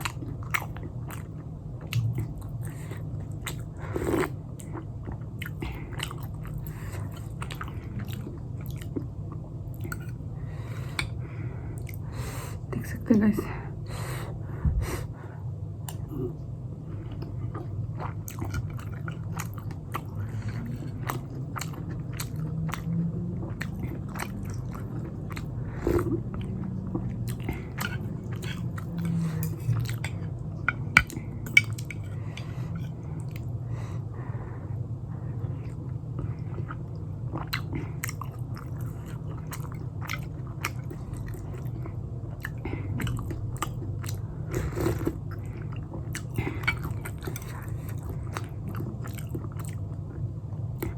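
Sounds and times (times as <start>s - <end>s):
steady low hum: 0.0s - 50.9s
wet chewing and biting: 17.6s - 33.5s.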